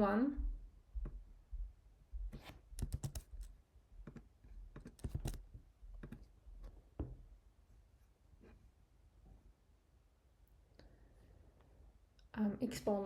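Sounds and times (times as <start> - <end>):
computer keystrokes: 2.4 - 3.4, 4.8 - 5.4.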